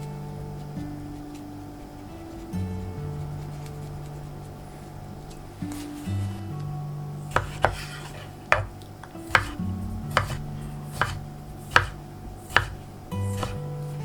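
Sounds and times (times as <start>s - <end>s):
background music: 0.0s - 14.0s
knife chopping on cutting board: 7.3s - 13.6s.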